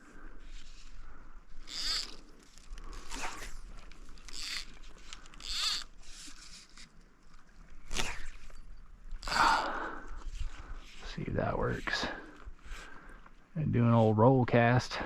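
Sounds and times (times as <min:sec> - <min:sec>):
fly line zipping through rod guides: 0:00.5 - 0:07.0, 0:07.8 - 0:09.4.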